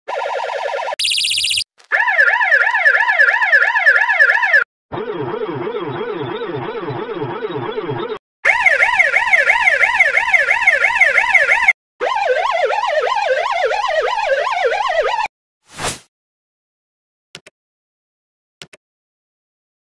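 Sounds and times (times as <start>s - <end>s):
ambulance siren wailing: 0.1s - 6.0s, 8.5s - 15.3s.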